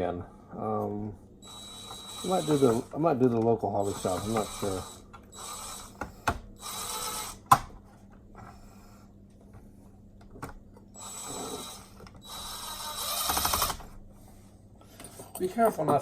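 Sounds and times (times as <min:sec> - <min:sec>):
power screwdriver running: 0:01.4 - 0:03.0, 0:03.8 - 0:07.6, 0:11.0 - 0:13.9.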